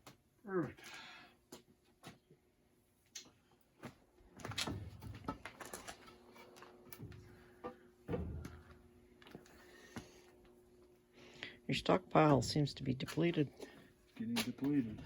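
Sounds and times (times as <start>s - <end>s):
faint steady hum: 0.1s - 15.0s
heavy thumps: 8.0s - 9.4s.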